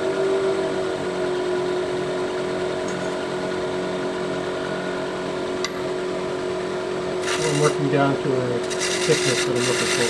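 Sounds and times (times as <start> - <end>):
gouge shaving spinning wood: 7.2 - 7.8, 8.6 - 10.0
wood lathe humming: 7.2 - 10.0.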